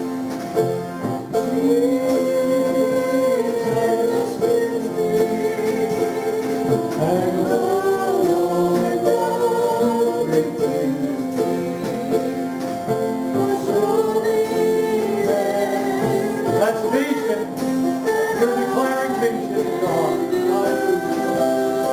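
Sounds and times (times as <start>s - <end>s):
congregation singing a hymn: 0.0s - 21.9s
guitar: 0.0s - 21.9s.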